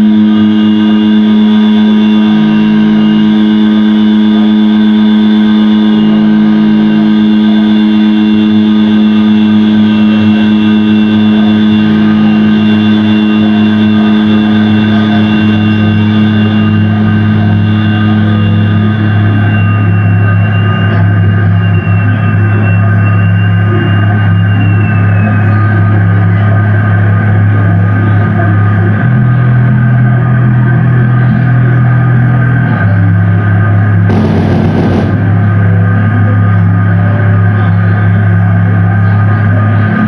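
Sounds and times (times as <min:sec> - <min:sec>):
electronic drone music: 0:00.0 - 0:39.6.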